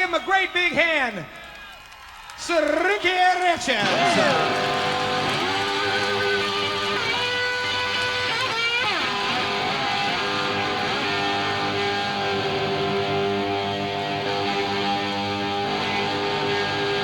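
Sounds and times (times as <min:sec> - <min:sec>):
live rock band: 0:03.8 - 0:17.0
electric guitar sustained notes: 0:03.9 - 0:17.0.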